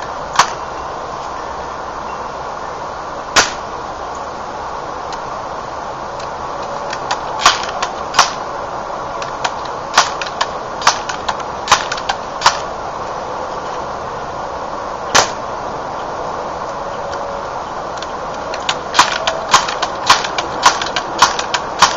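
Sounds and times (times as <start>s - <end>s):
air rifle firing crack: 0.3s - 0.6s, 3.4s - 3.7s, 7.1s - 8.4s, 9.4s - 12.7s, 15.1s - 15.5s, 18.6s - 21.9s
air rifle pump clacks: 9.2s - 12.6s, 18.0s - 21.9s.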